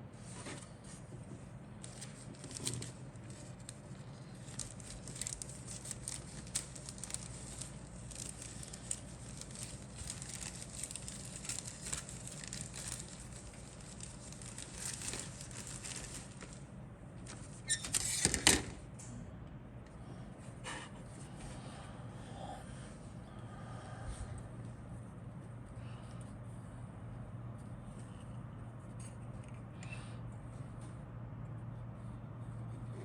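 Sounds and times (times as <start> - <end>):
plastic packaging crinkling: 1.8 - 18.2.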